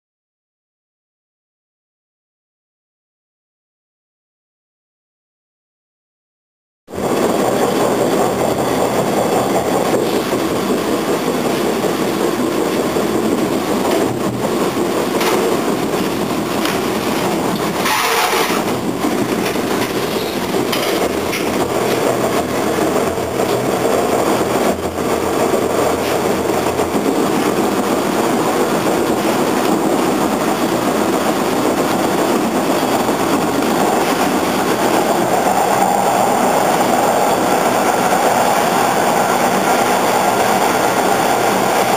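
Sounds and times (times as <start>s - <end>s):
subway car rumbling on track: 6.9s - 41.9s
rhythmic wheel thumping: 7.2s - 35.0s.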